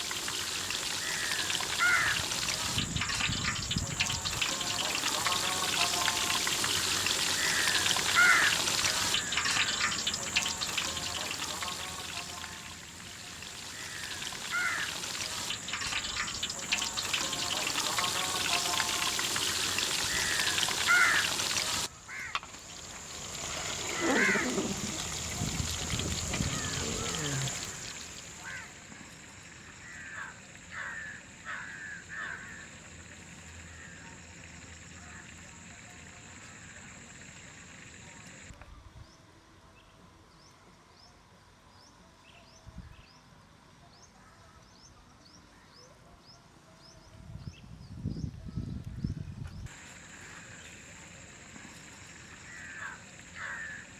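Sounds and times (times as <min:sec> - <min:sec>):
steady high hiss: 0:00.0 - 0:38.5, 0:49.7 - 0:53.9
short arched bird calls: 0:00.2 - 0:12.7, 0:13.5 - 0:28.7.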